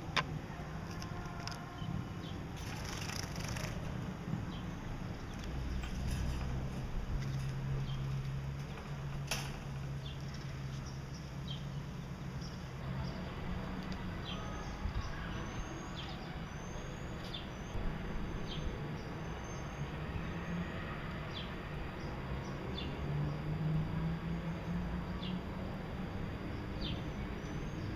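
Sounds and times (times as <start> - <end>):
finches chirping: 10.0 - 20.6.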